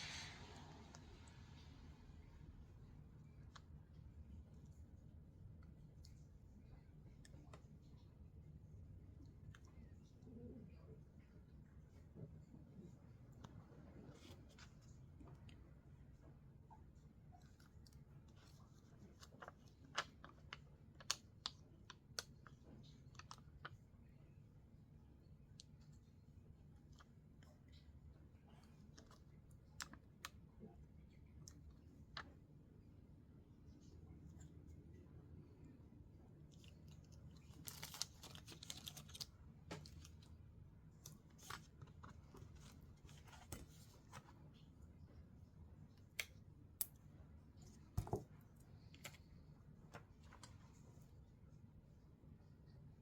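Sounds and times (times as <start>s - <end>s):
faint low background noise: 0.0s - 53.0s
paper crinkling and rustling: 17.4s - 23.9s, 36.4s - 44.7s.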